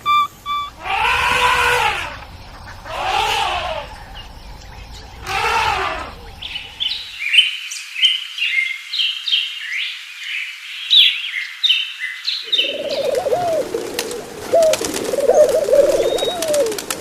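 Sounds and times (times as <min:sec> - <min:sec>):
animal calls falling in pitch: 0:00.0 - 0:07.2
small birds chirping: 0:00.0 - 0:17.0.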